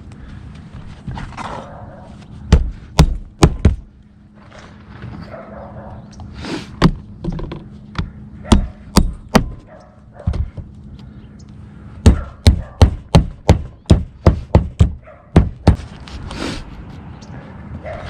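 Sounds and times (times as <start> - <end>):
knocks and thuds on tile roof: 2.5 - 3.9, 10.3 - 10.7, 12.0 - 15.9.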